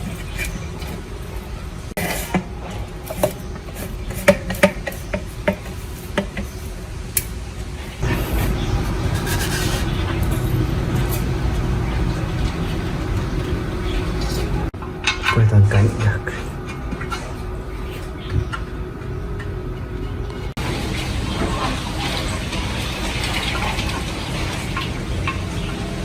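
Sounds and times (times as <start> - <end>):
machine running with low hum: 8.0 - 26.0.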